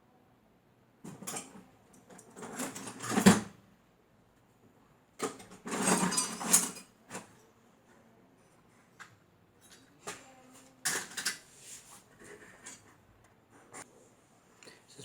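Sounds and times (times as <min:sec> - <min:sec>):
metal parts rattling and scraping: 0:05.2 - 0:07.3.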